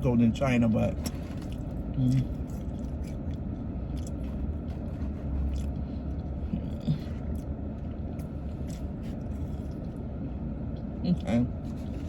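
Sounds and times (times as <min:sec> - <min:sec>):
eating sounds: 0:01.3 - 0:10.0.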